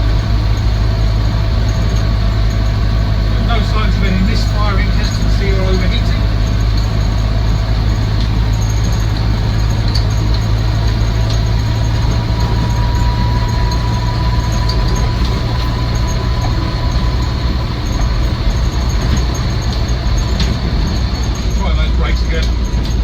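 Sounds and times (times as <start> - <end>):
car engine drone inside cabin: 0.0 - 23.0
faint gearbox whine: 0.0 - 23.0
light rattles: 0.0 - 23.0.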